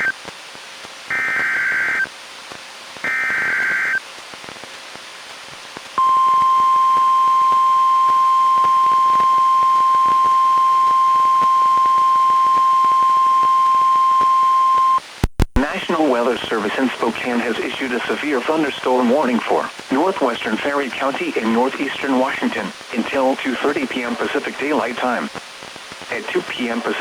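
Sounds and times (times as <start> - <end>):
steady warning alarm tone: 6.0 - 15.0.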